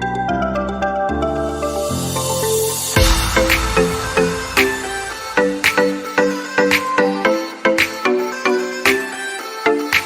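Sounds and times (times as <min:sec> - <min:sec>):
repeated chords: 0:02.8 - 0:06.3
sharp percussive hits: 0:02.9 - 0:06.3.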